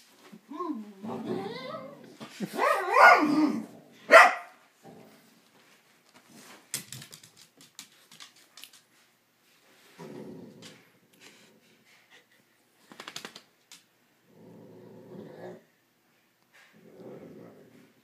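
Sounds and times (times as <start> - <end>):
dog whining grumble: 0.5 - 2.2, 14.3 - 15.7
dog barking: 2.6 - 4.6
faint scuffling clicks: 5.4 - 9.1.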